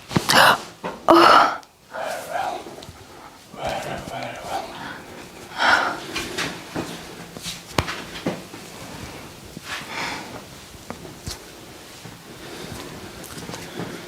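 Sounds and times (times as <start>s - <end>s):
person breathing loudly: 0.3s - 6.8s, 9.8s - 10.4s.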